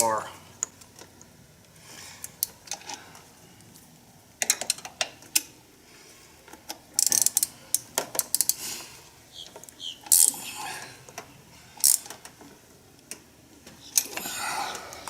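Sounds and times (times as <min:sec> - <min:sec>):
ratchet wrench clicking: 0:07.0 - 0:08.6, 0:11.8 - 0:12.1.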